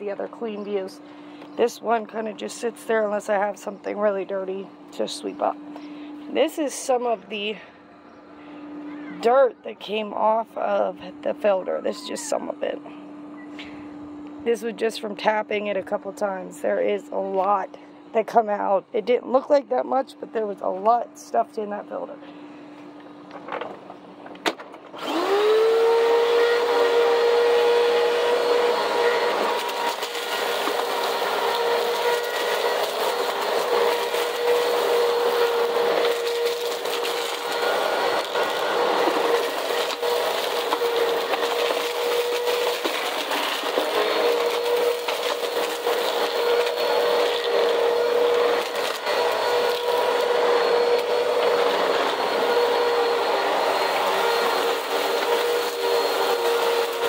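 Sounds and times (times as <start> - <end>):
vacuum cleaner motor whine: 0.0 - 18.0, 24.9 - 57.0.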